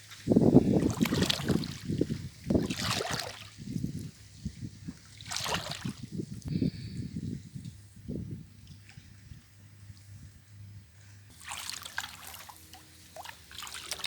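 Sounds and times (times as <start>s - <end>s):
water splashing around boat: 0.0s - 6.5s, 11.3s - 14.0s.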